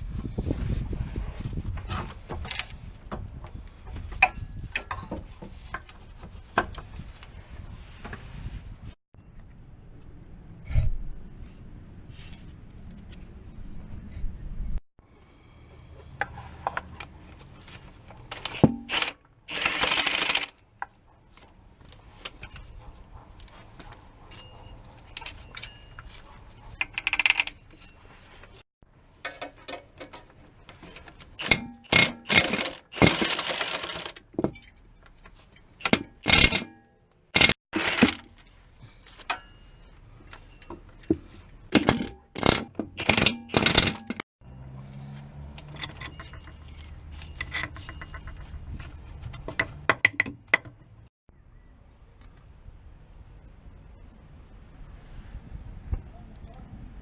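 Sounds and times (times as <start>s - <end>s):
metal hand tools clinking: 45.6s - 48.6s, 49.4s - 51.1s.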